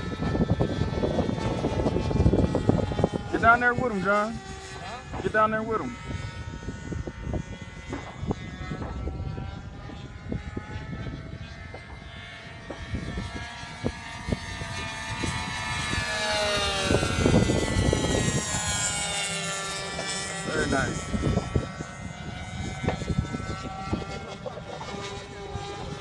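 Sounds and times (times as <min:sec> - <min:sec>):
model airplane engine flying by: 0:00.0 - 0:26.0.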